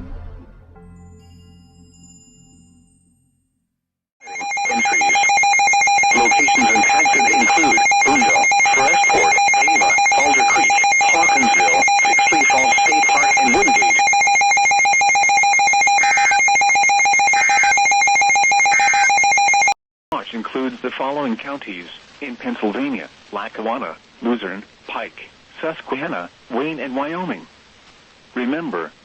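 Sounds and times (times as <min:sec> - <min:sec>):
loud steady alarm tone: 0:04.2 - 0:19.8
crackling reception noise: 0:04.2 - 0:29.0.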